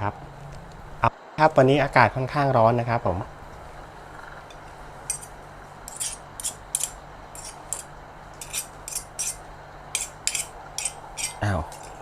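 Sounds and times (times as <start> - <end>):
cutlery clinking against a dish: 5.1 - 5.3, 5.9 - 9.4, 10.0 - 12.0.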